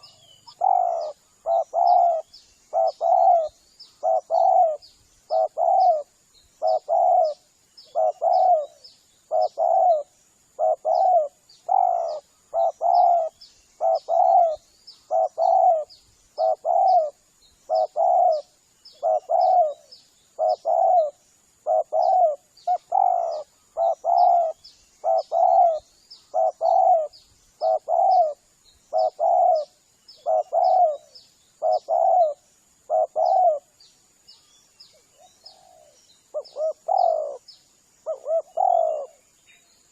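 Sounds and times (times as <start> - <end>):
dove cooing: 0.0 - 33.8, 35.0 - 39.2
faint high chirps: 0.0 - 39.9.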